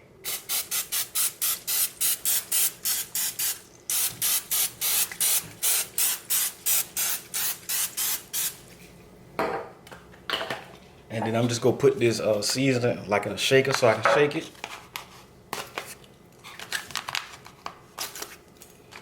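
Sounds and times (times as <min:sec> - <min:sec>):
spray bottle hissing squirts: 0:00.2 - 0:08.6.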